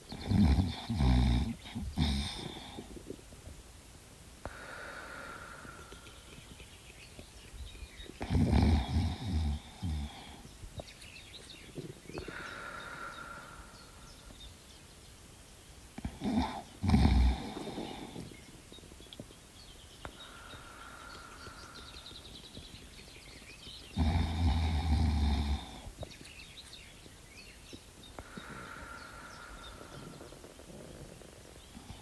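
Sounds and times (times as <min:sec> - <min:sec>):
dog snoring: 0:00.1 - 0:02.9, 0:08.1 - 0:10.4, 0:16.0 - 0:18.3, 0:23.9 - 0:26.0
soft high breathing: 0:04.4 - 0:08.2, 0:09.1 - 0:14.7, 0:19.8 - 0:23.6, 0:27.4 - 0:32.0.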